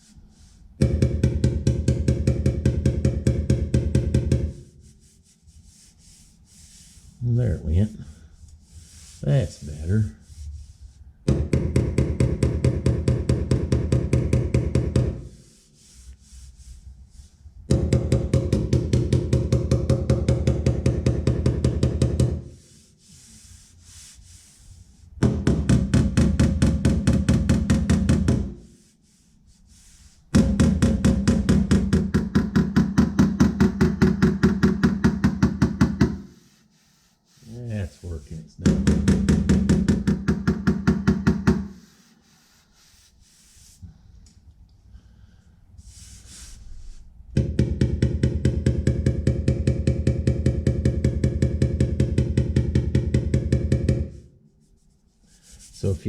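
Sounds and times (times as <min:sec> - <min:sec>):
hammer tapping sheet metal: 0:00.8 - 0:04.7, 0:11.3 - 0:15.4, 0:17.7 - 0:22.6, 0:25.2 - 0:28.8, 0:30.3 - 0:36.5, 0:38.6 - 0:42.0, 0:47.4 - 0:54.2.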